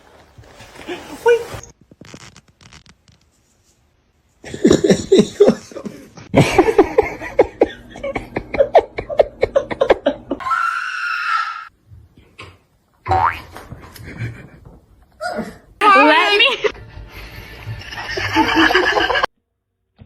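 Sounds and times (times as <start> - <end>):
person laughing hard: 4.5 - 10.4.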